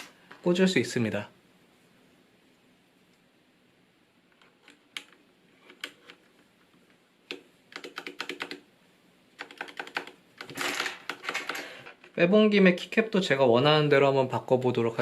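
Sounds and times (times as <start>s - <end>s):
mechanical keyboard keys clacking: 7.3s - 8.6s, 9.4s - 11.6s.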